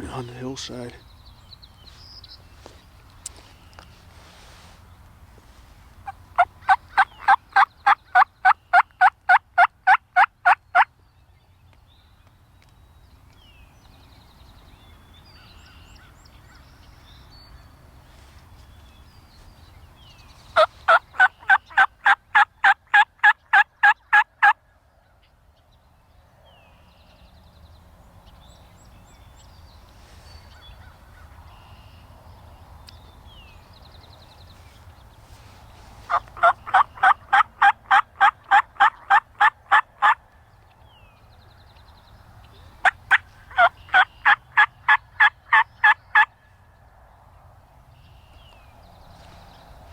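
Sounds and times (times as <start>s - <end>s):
faint songbird chirps: 0.0s - 9.1s, 10.6s - 22.0s, 24.8s - 37.4s, 40.3s - 49.9s
turkey yelps: 36.1s - 40.2s, 42.8s - 46.3s.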